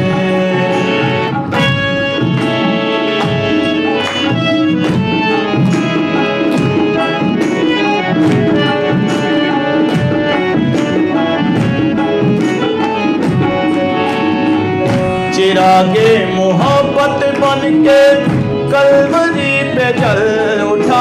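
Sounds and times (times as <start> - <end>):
steady percussion beat: 0.0 - 21.0
sustained melody notes: 0.0 - 21.0.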